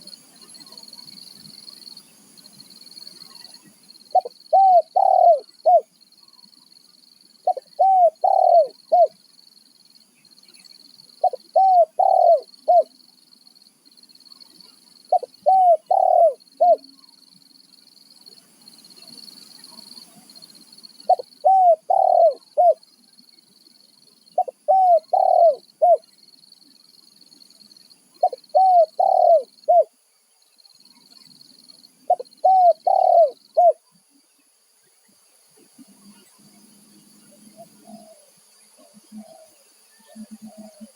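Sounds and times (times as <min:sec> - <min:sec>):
dove cooing: 0:04.1 - 0:05.9, 0:07.4 - 0:09.2, 0:11.2 - 0:12.9, 0:15.1 - 0:16.9, 0:21.1 - 0:22.8, 0:24.4 - 0:26.1, 0:28.2 - 0:29.9, 0:32.1 - 0:33.8, 0:37.6 - 0:40.9.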